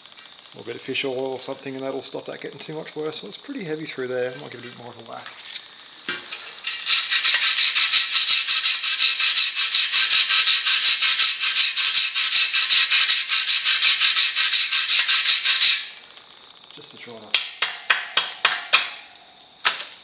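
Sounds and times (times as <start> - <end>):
wire brush scrubbing metal: 6.6 - 16.0.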